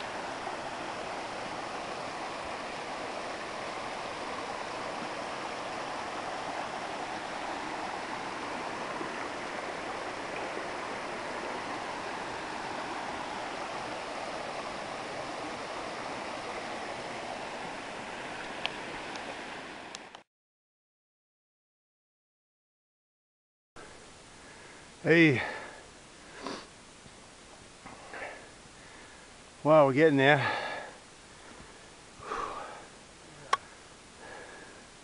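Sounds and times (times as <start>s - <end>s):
running water rushing: 0.0s - 20.2s.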